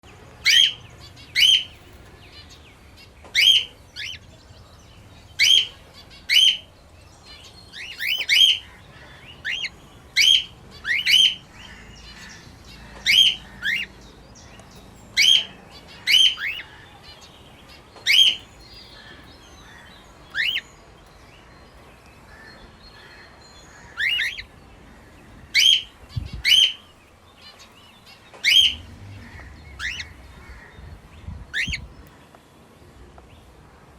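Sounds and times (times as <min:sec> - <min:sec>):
cockatiel chirping: 0:07.8 - 0:08.6, 0:15.2 - 0:16.7, 0:20.3 - 0:20.6, 0:24.0 - 0:24.5, 0:31.5 - 0:31.9.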